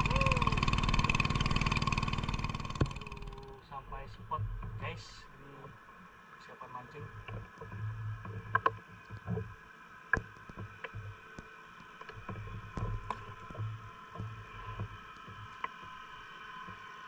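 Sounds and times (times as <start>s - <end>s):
gear knocking on wooden boat: 0.0s - 3.4s
high-pitched drone: 0.0s - 3.9s.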